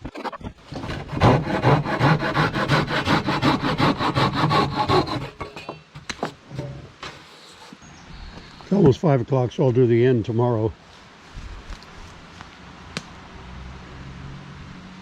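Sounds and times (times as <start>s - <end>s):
hand saw cutting wood: 0.1s - 7.8s.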